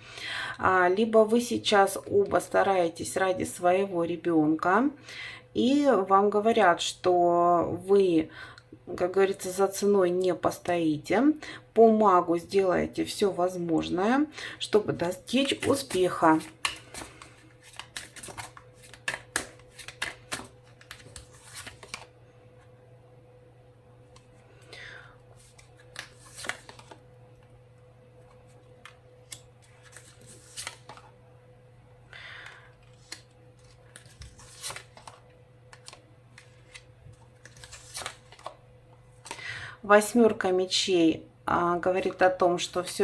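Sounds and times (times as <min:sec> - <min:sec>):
faint steady hum: 0:00.0 - 0:43.0
cards shuffling: 0:15.4 - 0:22.1, 0:25.4 - 0:27.0, 0:28.2 - 0:31.1, 0:32.4 - 0:39.5.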